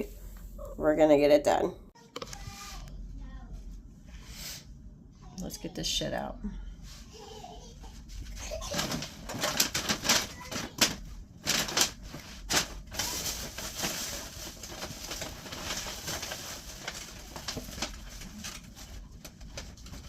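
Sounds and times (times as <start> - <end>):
plastic bags crinkling: 8.3 - 20.0.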